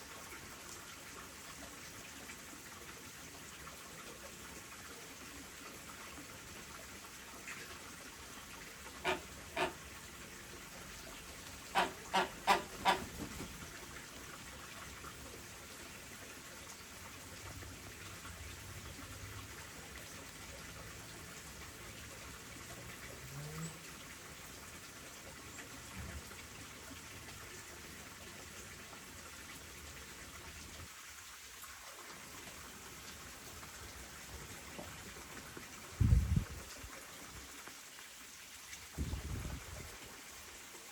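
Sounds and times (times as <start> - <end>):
faint patter of water: 0.0 - 40.9
flamingo calling: 9.0 - 9.8, 11.7 - 13.1.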